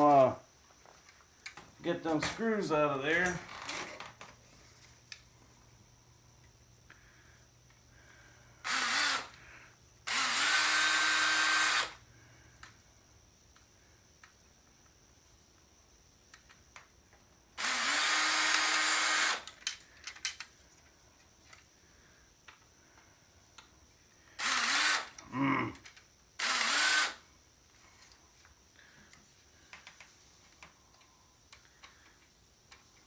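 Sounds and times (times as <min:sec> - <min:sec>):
power drill running: 0:08.6 - 0:09.4, 0:10.1 - 0:12.0, 0:17.6 - 0:19.5, 0:24.4 - 0:25.2, 0:26.4 - 0:27.2
clicks of screws being handled: 0:19.5 - 0:20.5.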